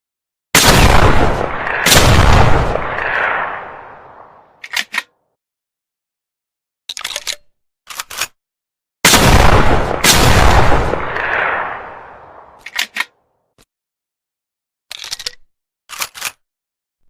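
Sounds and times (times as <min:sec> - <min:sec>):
shotgun firing with echo: 0:00.6 - 0:04.5, 0:09.1 - 0:12.6.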